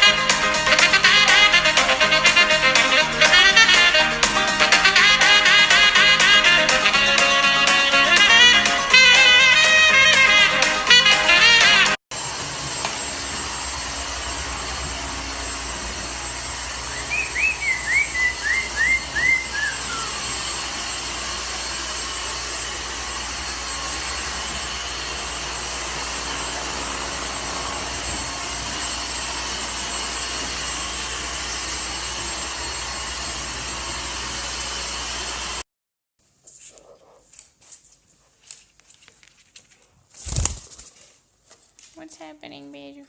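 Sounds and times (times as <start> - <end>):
bird calling down-slurred notes: 16.9 - 20.2.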